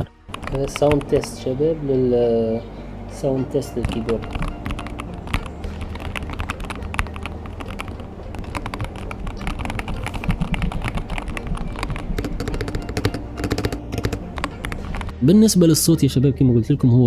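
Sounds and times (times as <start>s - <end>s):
quiet keyboard typing: 0.3s - 1.4s, 3.8s - 15.1s.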